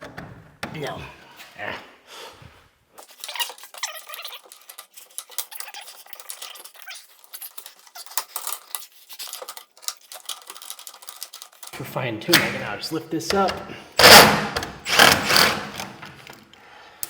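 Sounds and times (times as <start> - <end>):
light metallic clinks and scrapes: 3.0 - 11.8.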